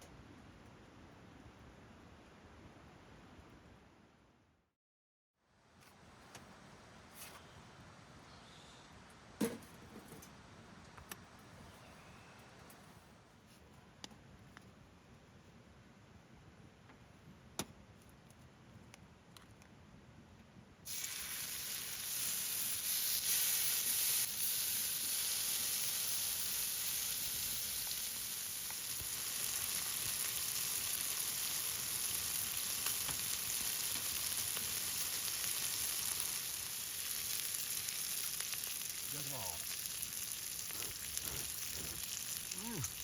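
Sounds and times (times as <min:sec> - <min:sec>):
meat sizzling on a pan: 0:20.9 - 0:43.0.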